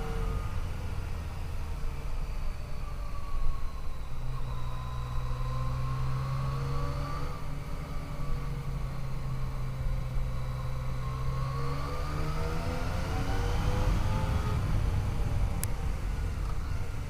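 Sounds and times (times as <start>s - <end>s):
wind rumble: 13.2s - 17.0s.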